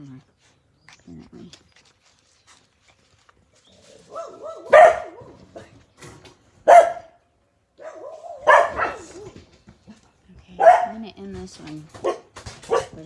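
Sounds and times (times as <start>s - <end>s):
puppies barking: 4.0s - 5.6s, 6.6s - 7.2s, 7.8s - 9.4s, 10.6s - 11.0s, 12.0s - 13.0s.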